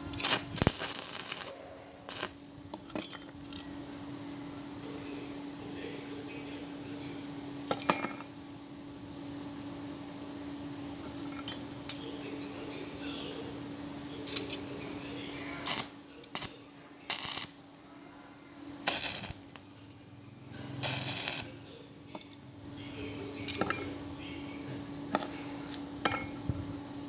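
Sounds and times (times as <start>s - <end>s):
steady low hum: 0.0s - 27.0s
hissing scraping bursts: 20.8s - 21.6s
light metallic clinks: 23.4s - 24.0s.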